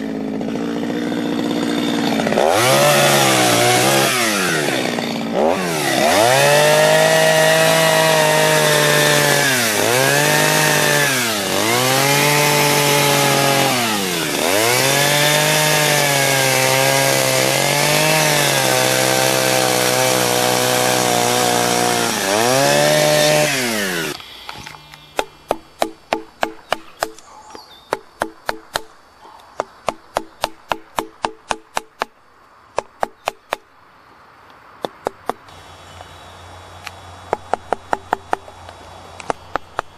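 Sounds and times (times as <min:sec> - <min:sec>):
chainsaw carving wood: 0:00.0 - 0:27.3, 0:36.7 - 0:39.9
sharp knocks: 0:24.5 - 0:27.2, 0:29.6 - 0:32.2, 0:37.3 - 0:38.5.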